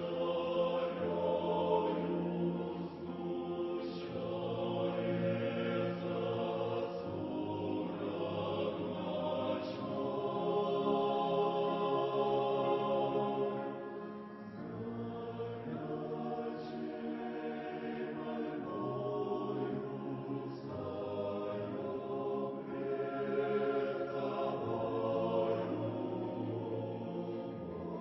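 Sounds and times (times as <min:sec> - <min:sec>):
choir singing a hymn: 0:00.0 - 0:28.0.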